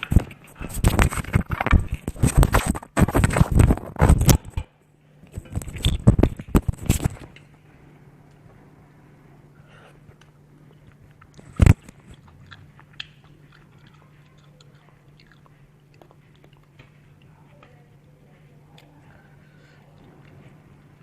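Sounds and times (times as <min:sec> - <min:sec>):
person chewing food: 0:09.9 - 0:17.6, 0:18.7 - 0:21.0.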